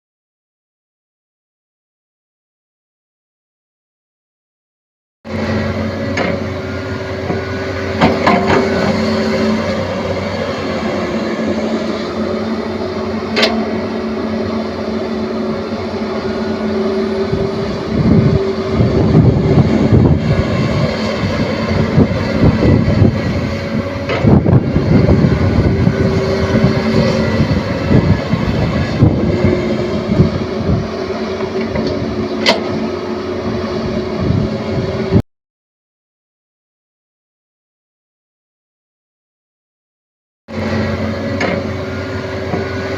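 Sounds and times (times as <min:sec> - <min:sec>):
excavator diesel engine running: 0:05.3 - 0:35.2, 0:40.5 - 0:42.9.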